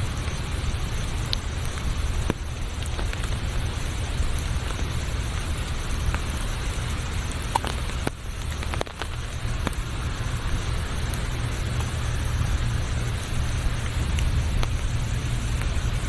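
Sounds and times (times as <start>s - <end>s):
raindrops ticking close by: 0.0s - 16.0s
steady rain: 0.0s - 16.0s
low rumble: 10.2s - 16.0s.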